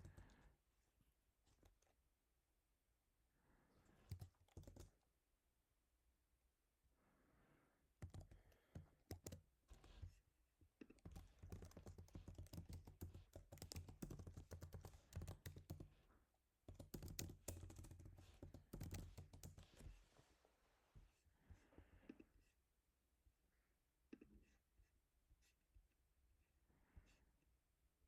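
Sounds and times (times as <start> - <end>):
quiet rapid keyboard typing: 0.0 - 0.6, 4.0 - 5.0, 8.0 - 10.2, 10.8 - 16.0, 16.6 - 20.0.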